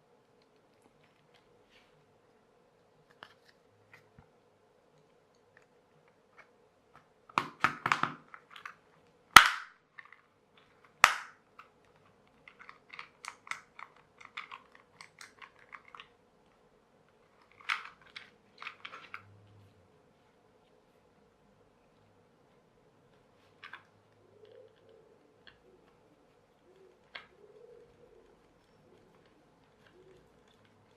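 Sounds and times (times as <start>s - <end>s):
sharp loud clicks: 9.3s - 9.8s, 11.0s - 11.4s
plastic parts clattering: 9.4s - 16.1s, 17.3s - 19.3s.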